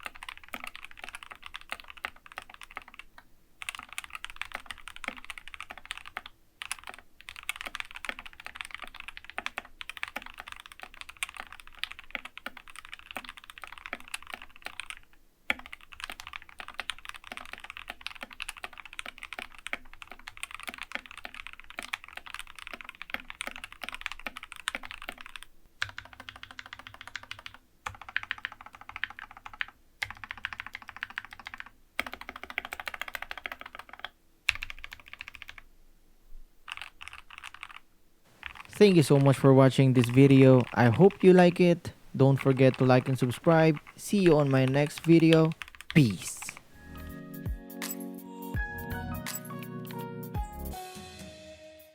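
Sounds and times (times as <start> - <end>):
mechanical keyboard typing: 0.0 - 35.6, 36.7 - 37.8, 38.4 - 39.3.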